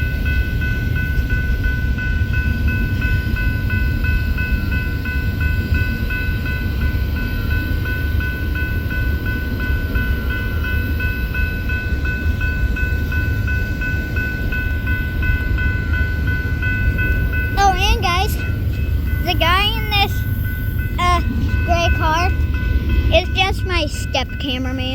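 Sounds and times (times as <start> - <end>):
train passing rumble: 0.0 - 24.9
bell ringing rapidly: 16.6 - 24.9.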